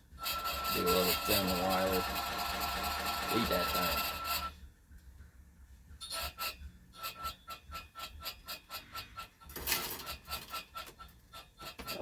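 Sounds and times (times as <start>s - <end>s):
wire stripper motor ticking: 0.2s - 4.6s.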